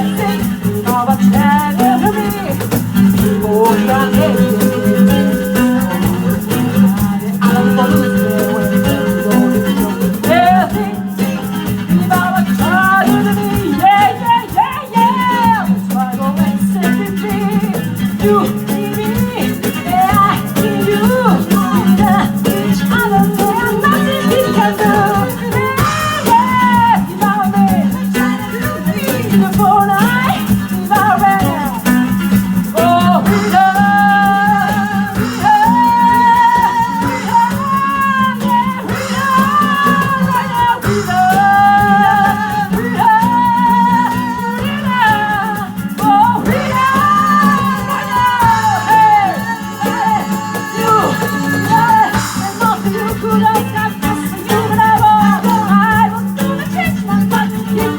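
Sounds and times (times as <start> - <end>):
live band playing soul: 0.0 - 57.9
shaker rattling: 0.0 - 57.9.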